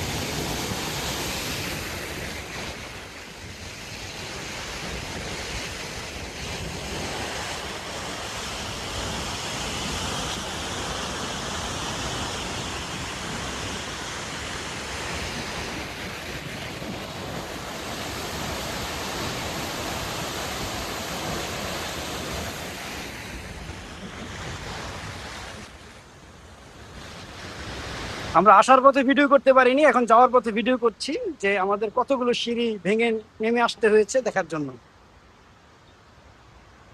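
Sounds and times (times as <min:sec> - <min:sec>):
waterfall rushing: 0:00.0 - 0:04.1, 0:05.7 - 0:25.8.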